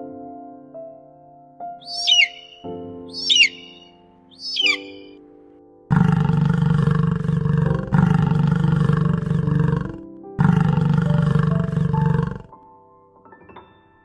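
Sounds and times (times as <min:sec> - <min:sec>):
large animal roaring: 0:05.9 - 0:12.5.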